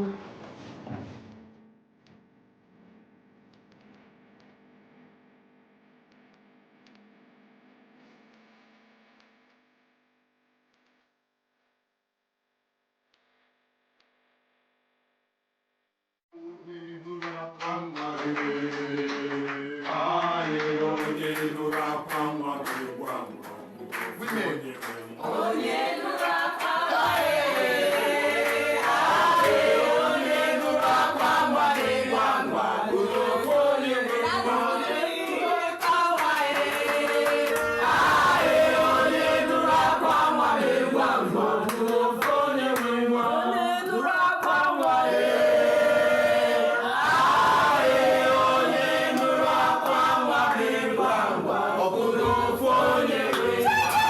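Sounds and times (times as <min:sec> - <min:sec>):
group of voices singing in chorus: 0:16.7 - 0:23.5, 0:24.8 - 0:54.0.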